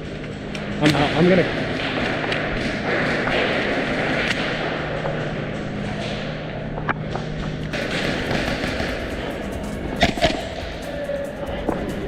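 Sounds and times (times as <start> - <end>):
steady background noise: 0.0 - 12.0
airsoft gunfire cracks: 7.7 - 10.6.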